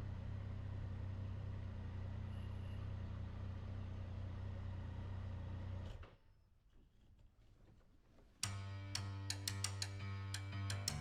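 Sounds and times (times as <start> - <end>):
motorcycle engine humming: 0.0 - 5.8.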